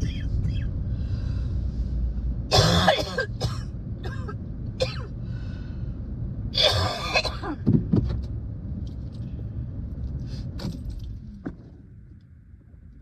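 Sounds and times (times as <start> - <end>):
car road and engine rumble: 0.0 - 13.0
person coughing: 2.5 - 5.1, 6.6 - 7.6.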